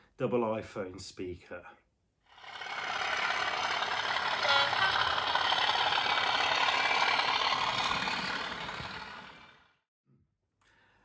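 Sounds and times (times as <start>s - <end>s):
diesel locomotive engine running: 2.4s - 9.8s.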